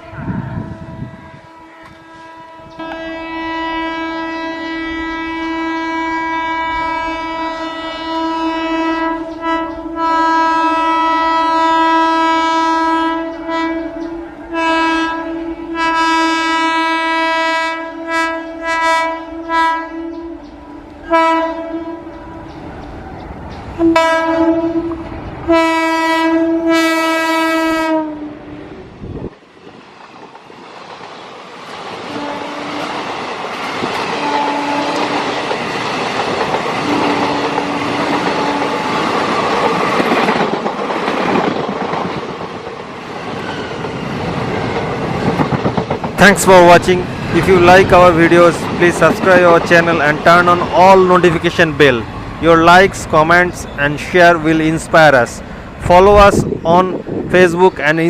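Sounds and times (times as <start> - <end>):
locomotive horn blasts: 0.0 - 22.2, 23.8 - 28.6, 32.1 - 32.9, 34.2 - 35.2, 36.9 - 38.9
train clattering over track: 29.6 - 55.2.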